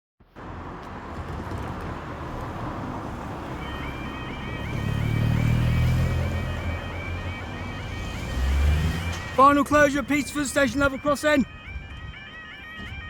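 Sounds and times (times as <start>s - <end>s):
road traffic: 0.2s - 13.0s
vehicle rumble: 0.2s - 13.0s
level crossing warning alarm: 3.3s - 13.0s.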